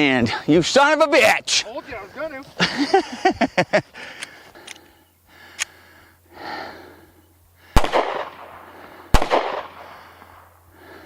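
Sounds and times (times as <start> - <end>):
heavy panting breaths: 3.8 - 7.8, 9.8 - 11.0
gunshots with echo: 7.8 - 9.9.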